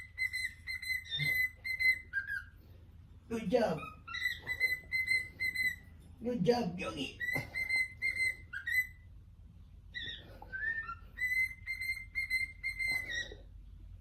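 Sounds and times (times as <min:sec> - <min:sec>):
cockatiel whistling: 0:00.0 - 0:02.6, 0:03.8 - 0:05.9, 0:07.2 - 0:09.0, 0:09.9 - 0:13.4.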